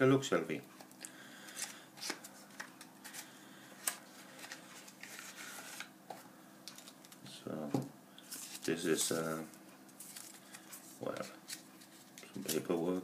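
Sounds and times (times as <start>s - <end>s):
cardboard and paper rustling: 1.5s - 7.1s, 8.3s - 9.4s, 10.0s - 12.8s.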